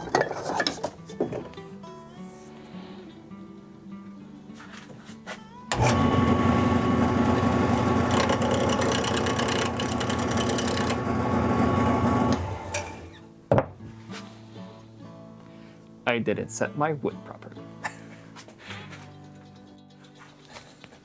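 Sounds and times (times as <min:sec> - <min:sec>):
wood lathe motor whining: 0:05.7 - 0:13.2.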